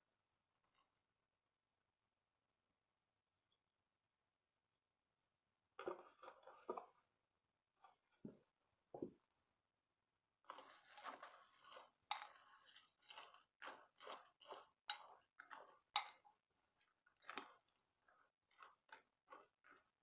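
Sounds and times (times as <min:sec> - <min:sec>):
crisp cereal crunches: 0:10.5 - 0:11.8.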